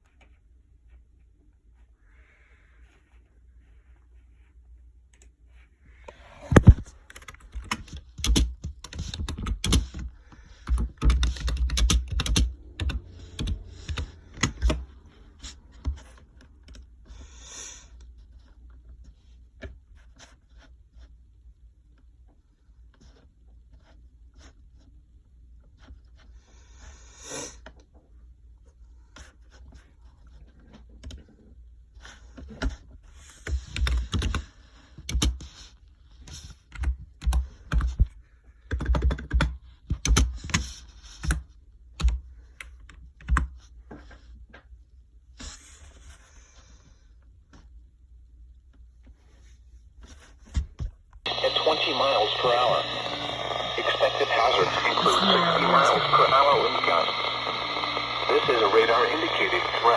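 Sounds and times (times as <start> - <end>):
typing on computer keyboard: 10.6 - 14.8, 38.7 - 40.2.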